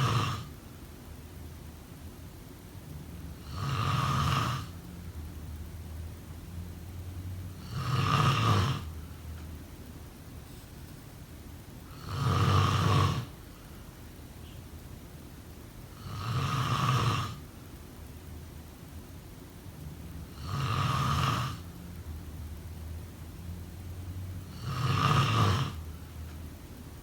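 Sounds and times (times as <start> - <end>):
person snoring: 0.0 - 0.5, 3.4 - 4.8, 7.6 - 8.9, 11.9 - 13.3, 16.0 - 17.4, 20.3 - 21.7, 24.4 - 25.8.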